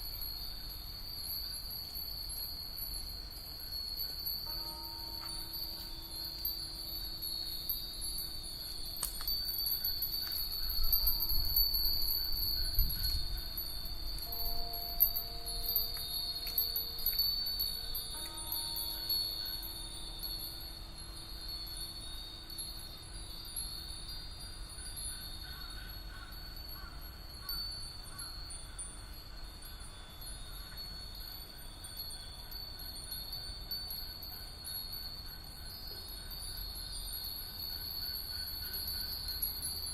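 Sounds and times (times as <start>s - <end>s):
wind bells tinkling: 0.0s - 39.9s.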